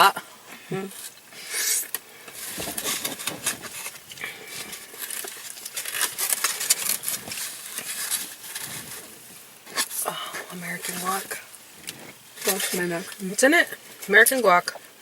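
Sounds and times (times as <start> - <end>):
wet chewing with mouth smacks: 11.8 - 12.2.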